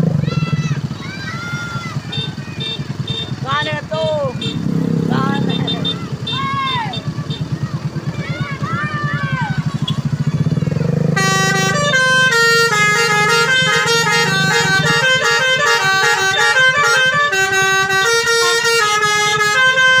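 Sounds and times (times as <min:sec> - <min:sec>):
bus engine running: 0:00.0 - 0:20.0
multi-tone bus horn tune: 0:02.1 - 0:03.4, 0:04.3 - 0:07.6, 0:10.8 - 0:20.0.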